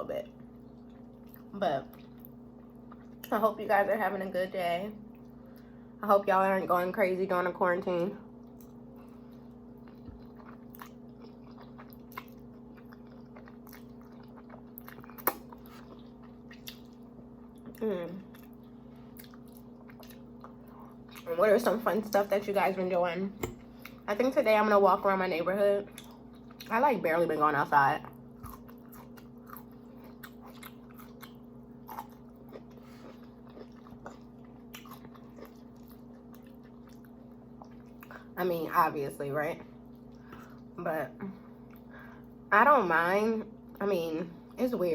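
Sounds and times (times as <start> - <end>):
steady low hum: 0.0 - 44.9
person chewing: 8.4 - 21.3, 28.0 - 38.3.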